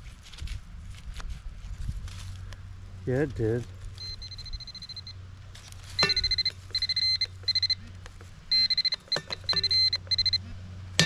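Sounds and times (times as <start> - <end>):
pinpointer pulsing alert: 4.0 - 5.2, 6.0 - 10.5
sharp clicks: 6.2 - 10.4.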